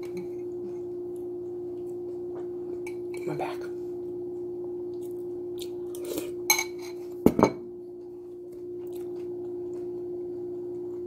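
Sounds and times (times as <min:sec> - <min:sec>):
steady hum: 0:00.0 - 0:11.0
cutlery clinking against dish: 0:06.5 - 0:07.6.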